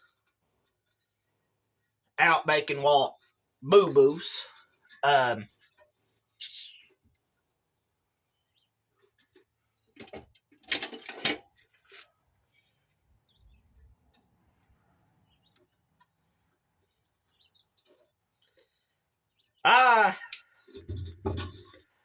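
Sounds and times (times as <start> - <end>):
short knocks and clatters: 20.7 - 22.0.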